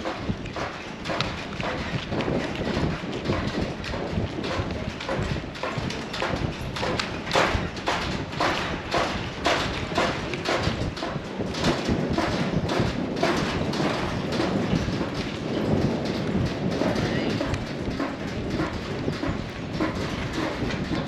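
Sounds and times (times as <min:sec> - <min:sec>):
footsteps on a hard surface: 0:00.0 - 0:21.0.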